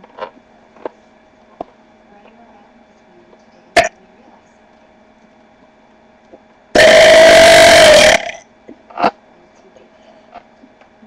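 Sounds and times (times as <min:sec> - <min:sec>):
man burping: 0:06.8 - 0:08.4.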